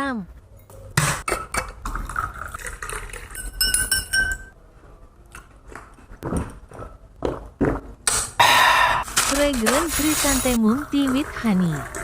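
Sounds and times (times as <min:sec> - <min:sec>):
spoon clinking against glass: 0:03.2 - 0:04.6
glass ringing tone: 0:03.3 - 0:04.6.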